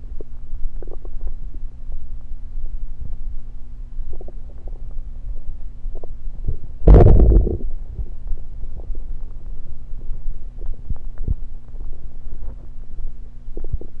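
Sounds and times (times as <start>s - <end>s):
stomach gurgling: 0.0s - 14.0s
bubbly pops: 6.9s - 7.7s.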